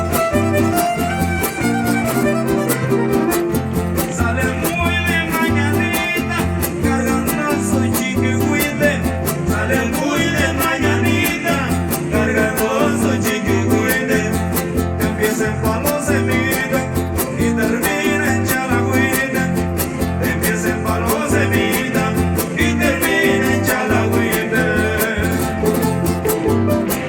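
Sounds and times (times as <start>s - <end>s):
violin melody: 0.0s - 4.0s
strummed guitars: 0.0s - 27.0s.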